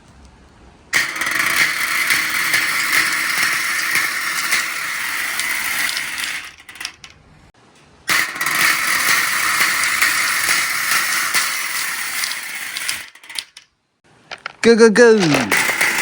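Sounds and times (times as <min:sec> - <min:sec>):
marbles rolling on track: 0:01.0 - 0:07.2, 0:08.1 - 0:13.7, 0:15.2 - 0:16.0.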